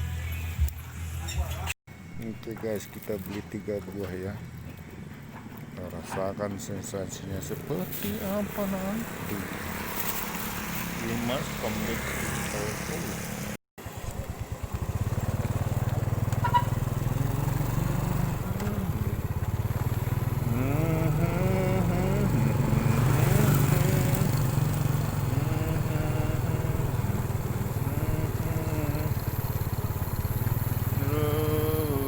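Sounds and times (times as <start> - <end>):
motorcycle engine running: 2.0 - 32.0
people's voices: 5.8 - 9.6, 20.4 - 24.4, 25.3 - 27.1, 27.8 - 29.2, 30.9 - 32.0.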